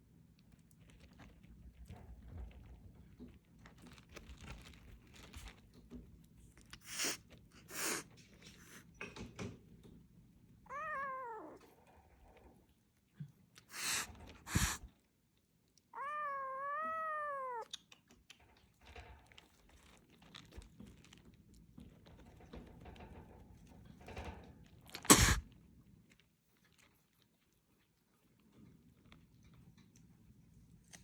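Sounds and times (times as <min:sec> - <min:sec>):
cat meowing: 0:10.7 - 0:11.7, 0:13.8 - 0:14.9, 0:15.9 - 0:17.7
short hiss-like noise bursts: 0:13.7 - 0:14.9, 0:25.1 - 0:25.4.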